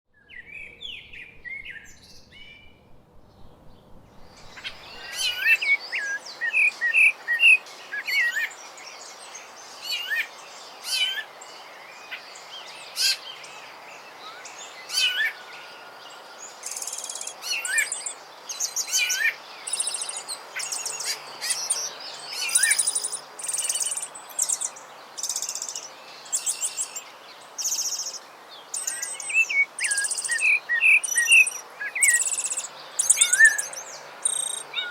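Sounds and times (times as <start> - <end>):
thrush singing whistled phrases: 28.8 - 34.9.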